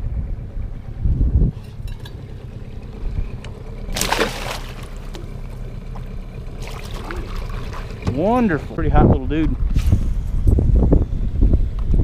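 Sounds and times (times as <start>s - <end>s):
steady low rumble: 0.0s - 12.0s
water splashing: 3.8s - 8.8s.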